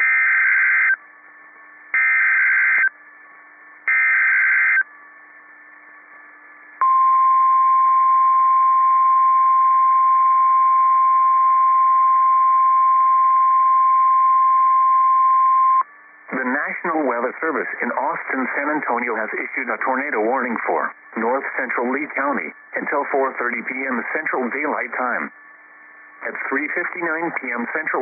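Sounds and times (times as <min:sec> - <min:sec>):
steady alarm tone: 0:00.0 - 0:17.3
screeching digital bursts: 0:02.0 - 0:02.9, 0:03.9 - 0:04.8.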